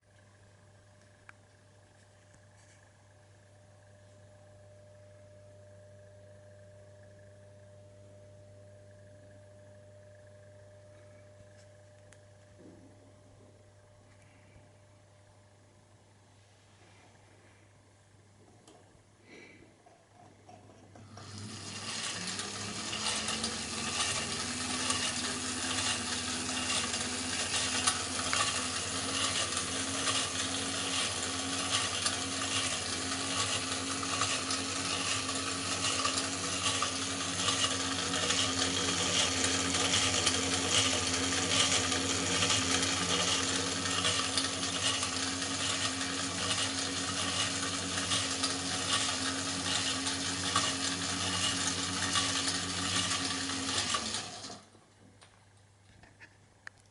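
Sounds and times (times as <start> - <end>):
toy ride motor humming: 20.7 - 54.8.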